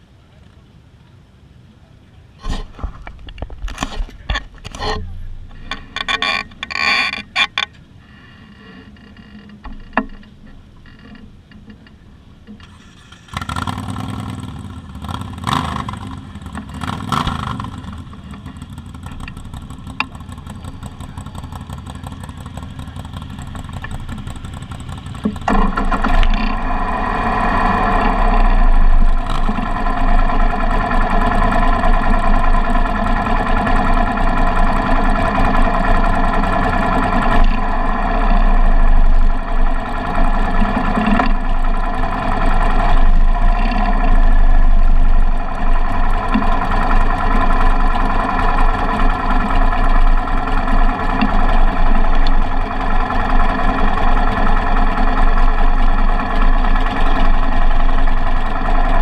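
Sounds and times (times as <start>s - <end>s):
motorcycle engine revving: 12.6s - 59.0s.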